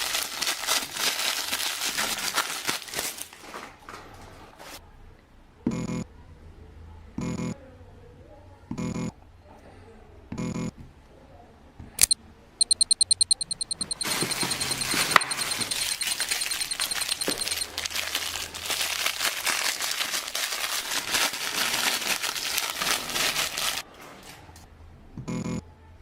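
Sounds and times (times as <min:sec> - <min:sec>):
plastic packaging crumpling: 0:00.0 - 0:03.8, 0:14.0 - 0:23.8
sharp click: 0:12.0 - 0:13.9
high-pitched pulses: 0:12.0 - 0:17.6.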